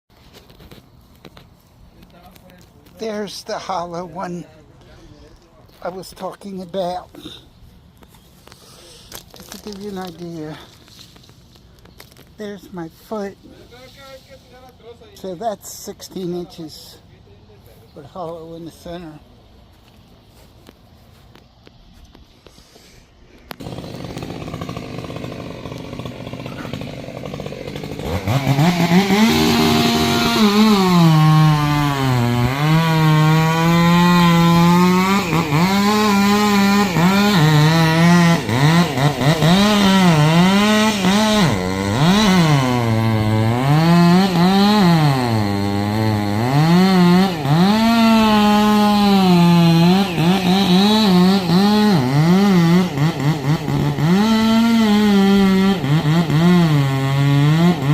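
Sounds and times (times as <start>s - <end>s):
chainsaw cutting wood: 8.4s - 13.3s, 23.4s - 57.9s.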